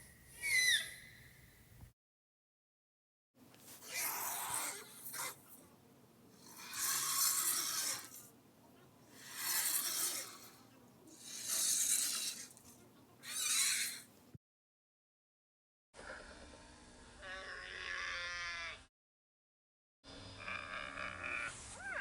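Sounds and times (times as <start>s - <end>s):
creature hissing rasps: 3.8s - 5.4s, 6.4s - 8.2s, 9.2s - 12.6s, 13.2s - 14.1s.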